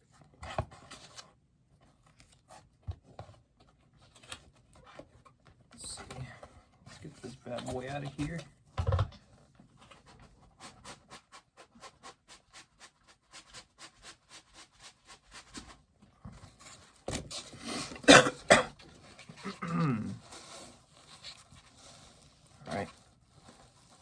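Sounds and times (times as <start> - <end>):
packaging rustling and scraping: 18.7 - 24.0.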